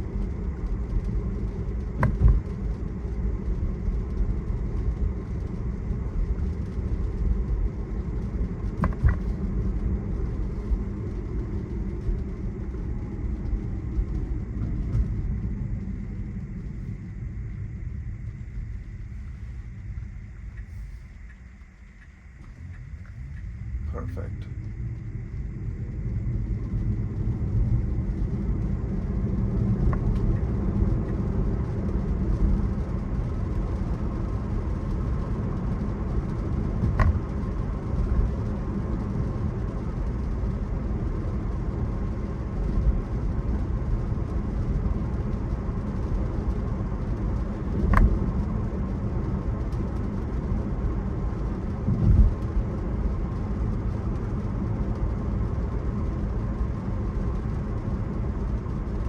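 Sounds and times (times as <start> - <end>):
road and tyre noise in car: 0.0 - 59.0
low thump: 2.0 - 2.5, 8.8 - 9.4, 36.8 - 37.3.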